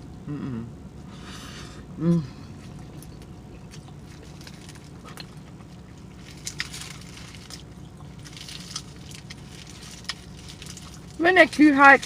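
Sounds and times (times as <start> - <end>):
low hum: 0.0 - 12.0
chewing and lip-smacking: 2.5 - 11.2.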